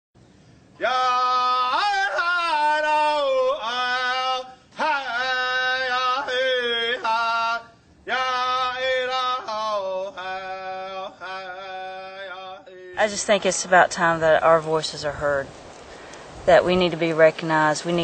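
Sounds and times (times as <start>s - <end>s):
solo voice chanting: 0.8s - 13.5s.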